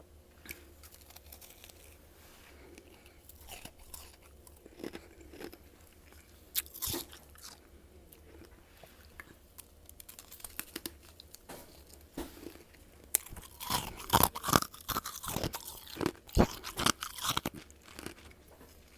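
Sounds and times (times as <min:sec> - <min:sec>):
crunchy frost being chewed: 0:00.4 - 0:18.9.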